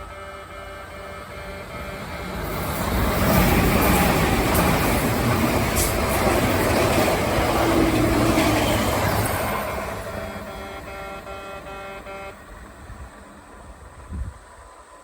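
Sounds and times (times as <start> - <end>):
train wheel and rail noise: 0.0 - 15.0.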